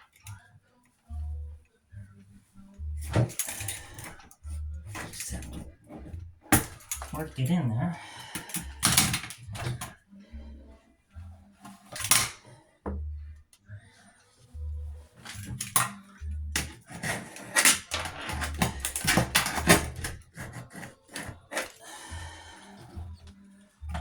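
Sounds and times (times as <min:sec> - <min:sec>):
hand tool scraping caulk: 0:15.2 - 0:23.3.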